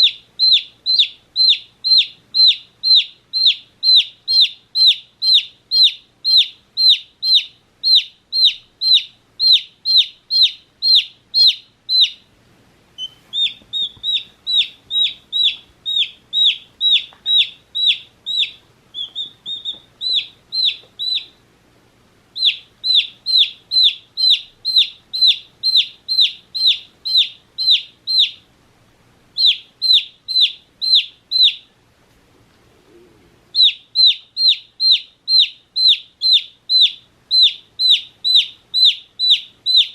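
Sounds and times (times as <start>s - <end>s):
baby chick peeping: 0.0s - 21.6s, 22.3s - 28.6s, 29.3s - 31.8s, 32.8s - 39.9s.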